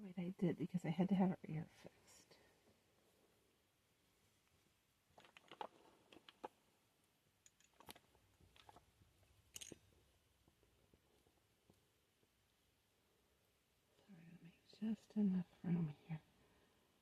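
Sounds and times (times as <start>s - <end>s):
clicks and crackles of doll handling: 5.1s - 6.6s, 7.4s - 11.8s.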